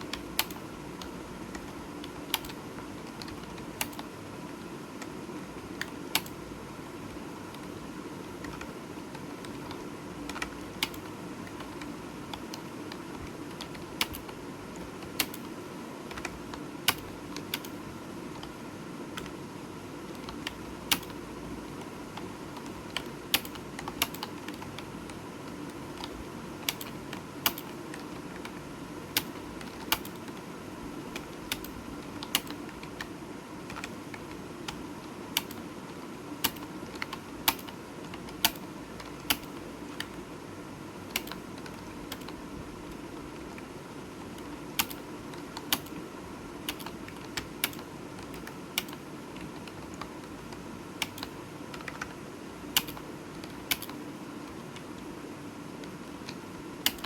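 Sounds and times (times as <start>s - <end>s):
keyboard key clicks: 36.4s - 40.2s, 44.8s - 46.0s, 46.7s - 52.2s, 52.8s - 54.0s, 55.8s - 57.0s.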